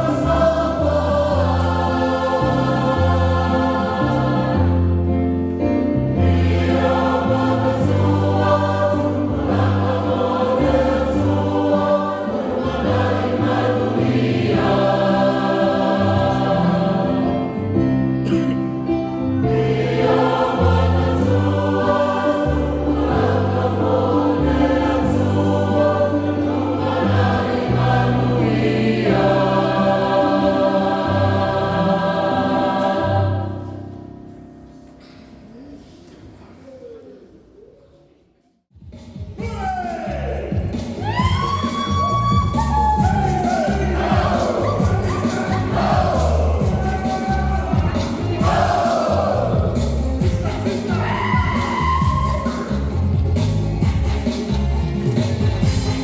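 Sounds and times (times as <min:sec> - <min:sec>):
choir singing sustained chords: 0:00.0 - 0:35.9, 0:43.2 - 0:56.0
steady bass line: 0:42.2 - 0:56.0.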